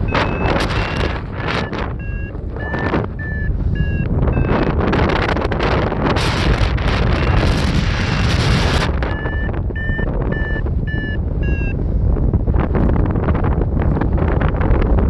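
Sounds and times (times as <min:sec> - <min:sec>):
short electronic beeps: 0:00.0 - 0:04.9, 0:07.0 - 0:11.8
wind buffeting microphone: 0:00.0 - 0:15.0.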